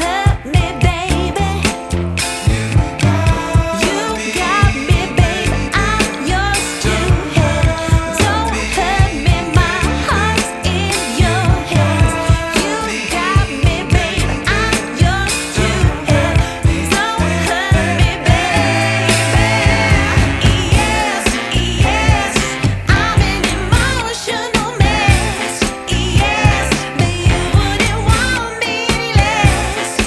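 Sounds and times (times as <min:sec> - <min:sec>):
pop song with vocals and beat: 0:00.0 - 0:30.0.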